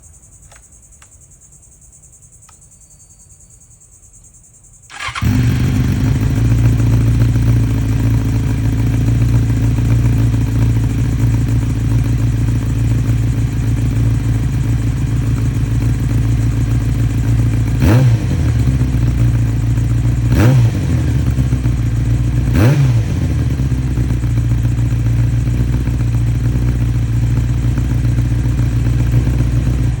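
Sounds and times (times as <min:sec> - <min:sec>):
faint clicks: 0:00.4 - 0:01.2
motorcycle engine starting and idling: 0:04.8 - 0:30.0
motorcycle engine revving: 0:04.9 - 0:30.0.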